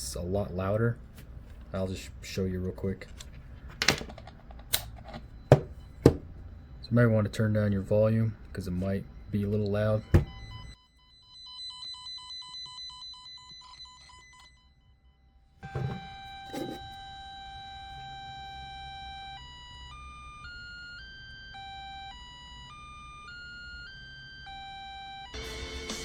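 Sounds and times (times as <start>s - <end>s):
knocks: 5.5s - 6.2s, 10.1s - 10.4s.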